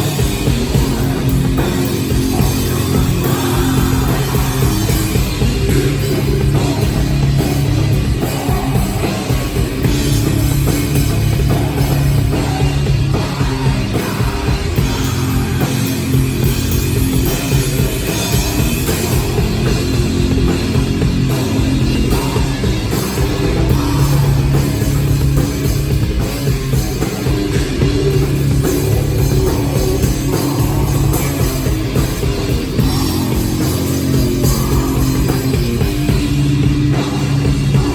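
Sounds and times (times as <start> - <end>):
rock band playing live: 0.0 - 37.9.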